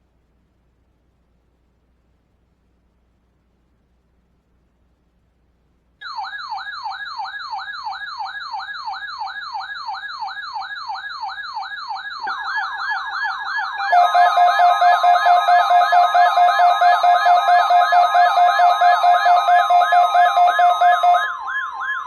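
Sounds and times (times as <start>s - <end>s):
electronic siren yelping: 6.0s - 22.0s
second yelping siren tone: 6.0s - 22.0s
steady siren tone: 6.0s - 22.0s.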